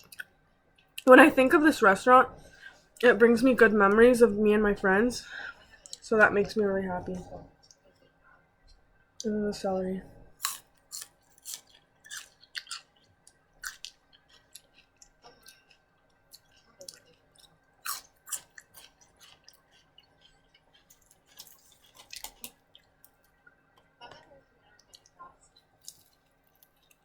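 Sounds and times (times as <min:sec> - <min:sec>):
crunchy chewing of celery: 0:10.4 - 0:23.4, 0:25.7 - 0:27.0.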